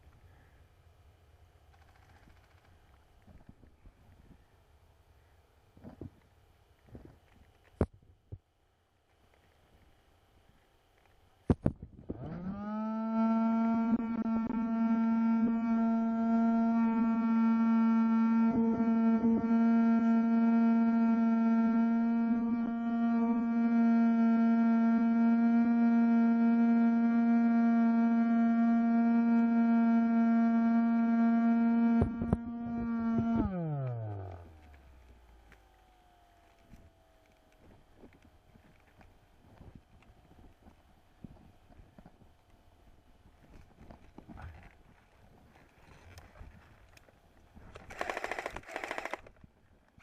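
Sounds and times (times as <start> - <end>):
electric fan humming: 12.0 - 44.0.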